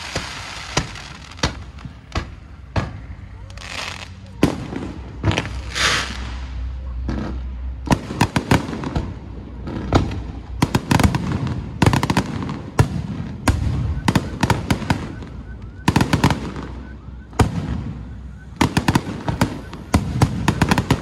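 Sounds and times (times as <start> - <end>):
firecrackers banging: 0.0 - 21.0.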